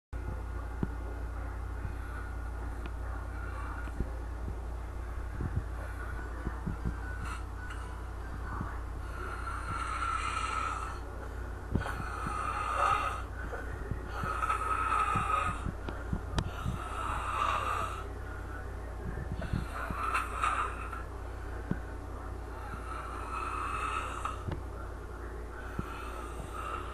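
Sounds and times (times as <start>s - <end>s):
woman snoring: 9.0s - 11.0s, 11.8s - 13.3s, 14.1s - 15.7s, 16.5s - 18.0s, 19.4s - 21.0s, 22.5s - 24.5s, 25.6s - 26.9s.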